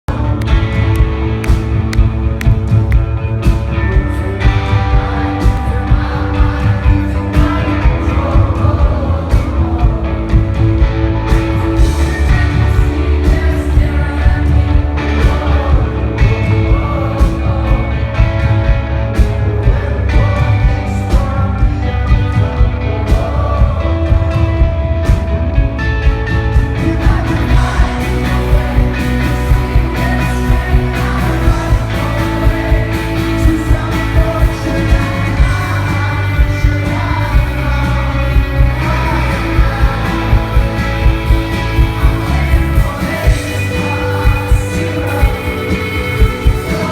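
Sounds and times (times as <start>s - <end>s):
man singing: 0.0s - 46.9s
rock band playing live: 0.0s - 46.9s
drum beat: 23.1s - 46.9s.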